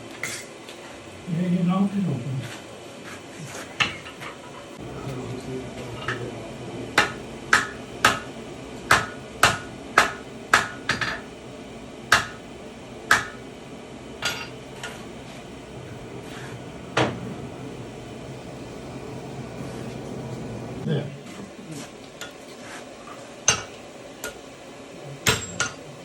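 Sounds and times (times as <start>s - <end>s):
hammer striking iron on anvil: 7.0s - 8.3s, 8.9s - 11.3s, 12.1s - 12.4s, 13.1s - 13.4s, 14.2s - 14.6s, 23.4s - 24.4s, 25.2s - 25.9s.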